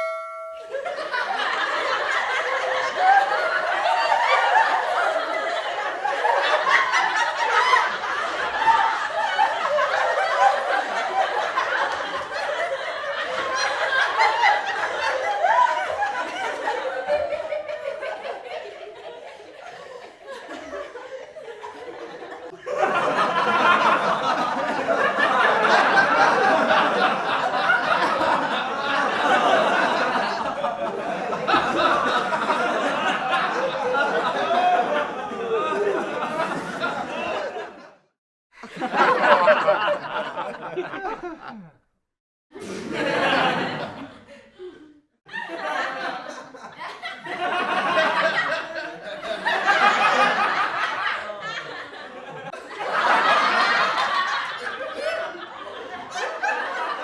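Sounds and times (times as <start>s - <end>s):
laugh track: 0.0s - 42.0s, 42.6s - 57.0s.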